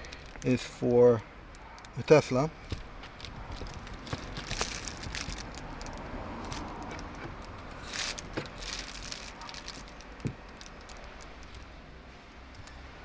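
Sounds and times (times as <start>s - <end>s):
charging cable rattling and clicking: 2.6s - 11.8s.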